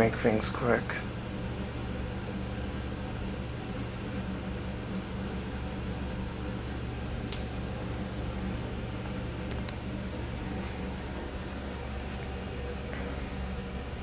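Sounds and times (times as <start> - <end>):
low mechanical hum: 0.0 - 14.0
sharp click: 7.3 - 7.5.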